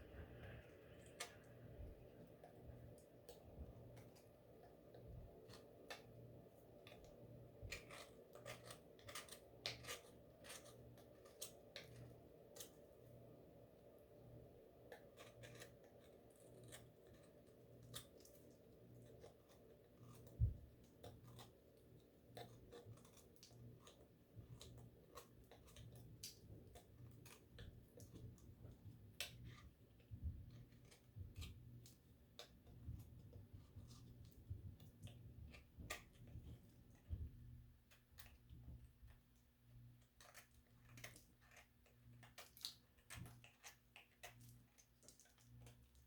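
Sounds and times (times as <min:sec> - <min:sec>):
low steady hum: 0:00.0 - 0:46.0.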